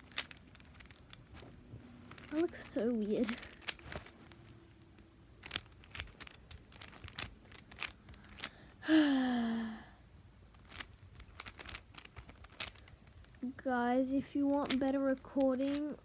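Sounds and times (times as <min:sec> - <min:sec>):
plastic cube clicking: 0:00.0 - 0:08.9, 0:10.5 - 0:13.5, 0:14.2 - 0:16.0
falling sigh-like vocal sound: 0:08.8 - 0:10.0.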